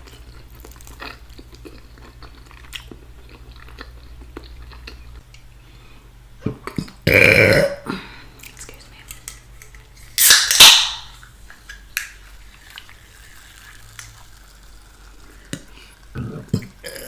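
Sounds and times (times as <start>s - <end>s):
clicks of eating and handling: 8.4s - 10.8s.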